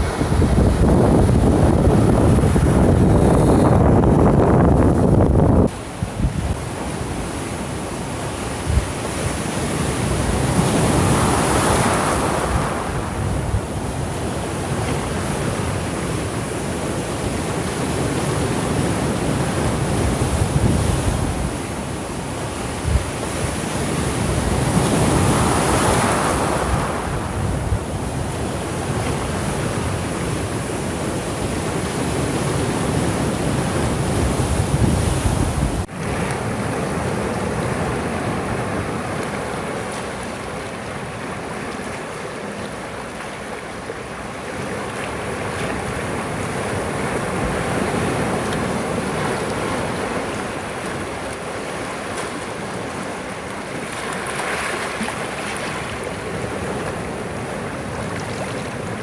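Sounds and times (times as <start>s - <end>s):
wind buffeting microphone: 0.0s - 6.8s, 23.9s - 35.9s
sea waves washing onto shore: 0.0s - 59.0s.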